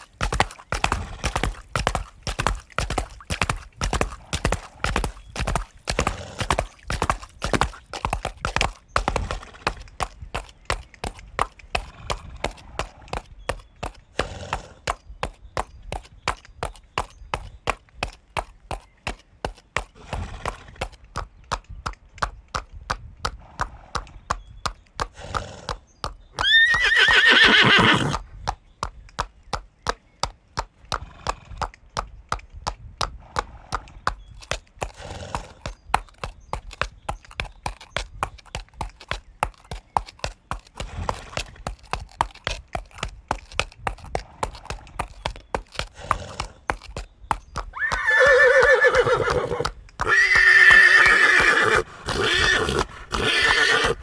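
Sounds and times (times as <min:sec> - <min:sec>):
horse hooves clip-clopping: 0:00.0 - 0:54.0
horse whinny: 0:26.4 - 0:28.2, 0:47.7 - 0:54.0.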